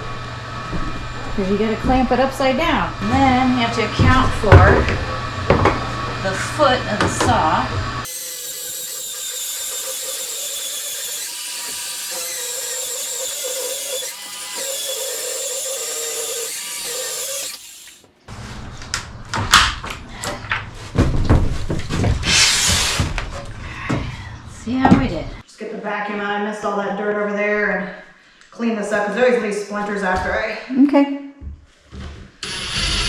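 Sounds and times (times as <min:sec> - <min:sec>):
circular saw cutting: 0:06.3 - 0:18.1, 0:32.4 - 0:33.0.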